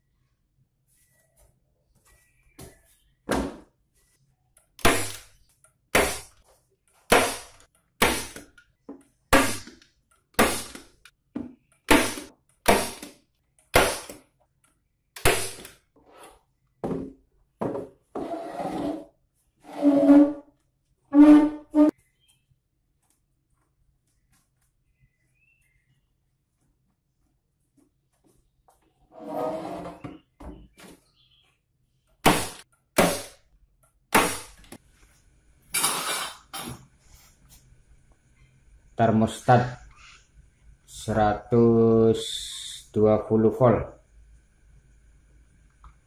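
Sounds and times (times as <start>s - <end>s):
rough scraping sounds: 18.1s - 20.5s, 29.1s - 30.0s.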